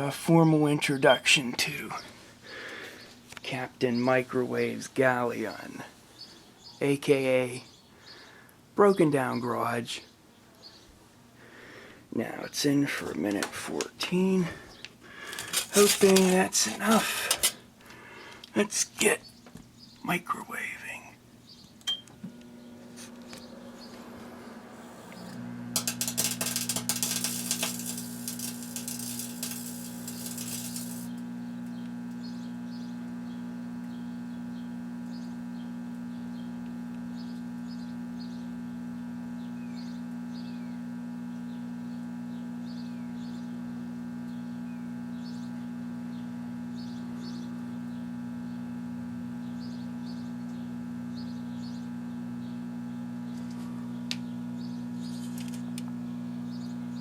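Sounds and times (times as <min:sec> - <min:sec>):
loud crackling buzz: 0:13.0 - 0:18.0, 0:22.0 - 0:57.0
microwave oven humming: 0:13.3 - 0:18.3, 0:21.2 - 0:57.0.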